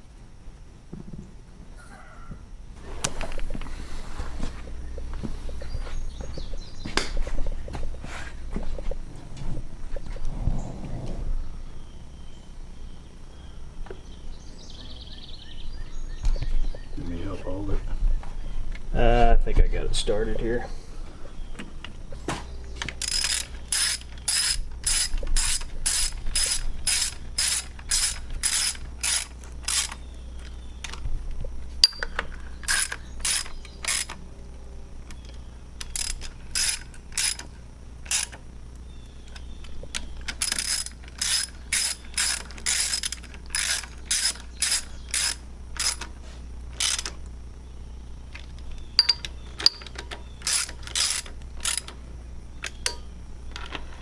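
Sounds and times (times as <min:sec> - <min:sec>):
ratchet wrench clicking: 0:22.9 - 0:31.0, 0:31.8 - 0:34.2, 0:35.1 - 0:38.4, 0:39.3 - 0:46.2, 0:46.8 - 0:47.2, 0:48.3 - 0:52.0.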